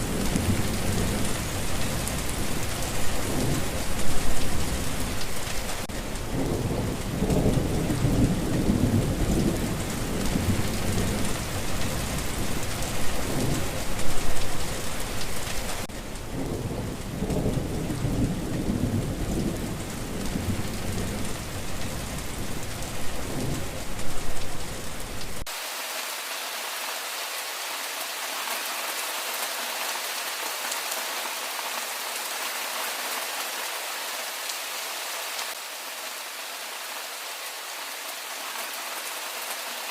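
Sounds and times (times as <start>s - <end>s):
rolling thunder: 0.0s - 15.1s, 16.2s - 25.4s
heavy rain on a street: 0.0s - 39.9s.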